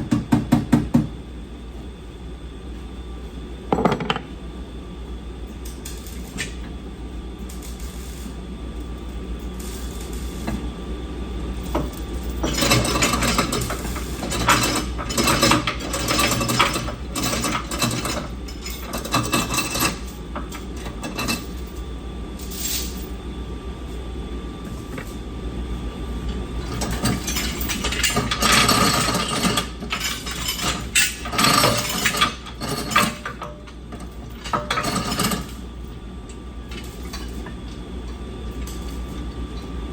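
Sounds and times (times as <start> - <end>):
steady low hum: 0.0 - 39.9
tools and metal parts clinking: 3.7 - 4.3, 11.7 - 23.2, 26.6 - 35.6, 36.7 - 37.6.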